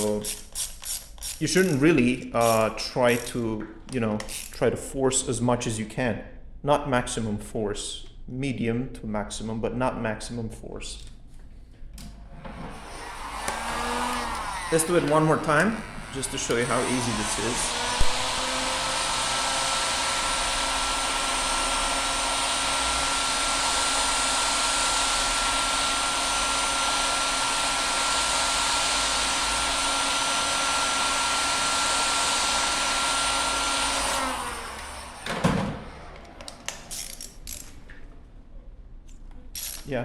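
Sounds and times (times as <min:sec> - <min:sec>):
heat gun blowing with motor whine: 0:12.4 - 0:35.4.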